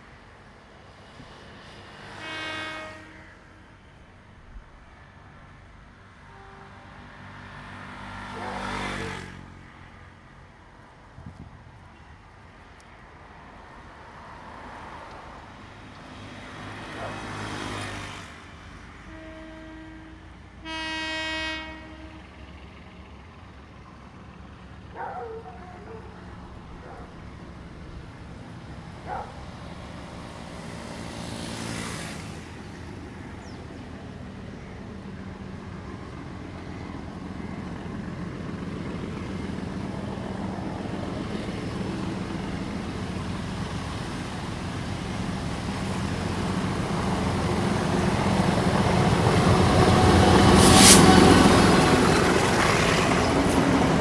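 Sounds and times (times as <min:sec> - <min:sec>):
train engine rumble: 0:00.0 - 0:08.6, 0:09.5 - 0:54.0
train horn blast: 0:02.1 - 0:03.9, 0:06.2 - 0:07.4, 0:19.0 - 0:22.5, 0:50.3 - 0:51.5
brief rushing noises: 0:50.5 - 0:51.6.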